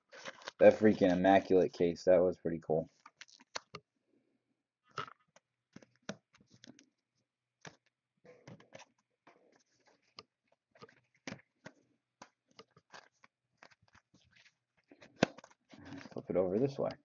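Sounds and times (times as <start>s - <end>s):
trading cards shuffled by hand: 0.1s - 1.2s, 7.6s - 16.9s.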